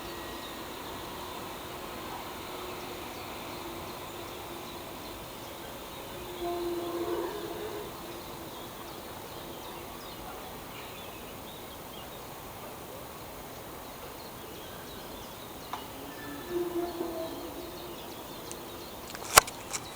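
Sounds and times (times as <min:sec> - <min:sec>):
outdoor background hiss: 0:00.0 - 0:19.9
brief click: 0:18.5 - 0:19.9.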